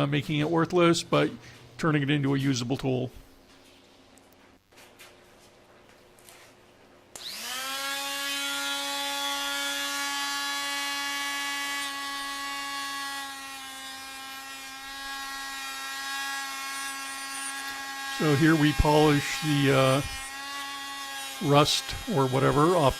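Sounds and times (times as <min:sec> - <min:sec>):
die grinder whining: 0:07.2 - 0:22.9.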